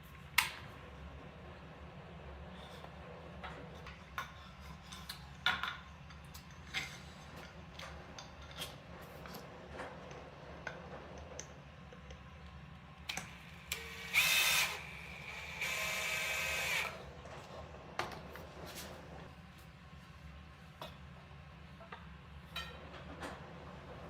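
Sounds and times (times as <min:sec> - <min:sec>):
power drill running: 0:13.3 - 0:17.1.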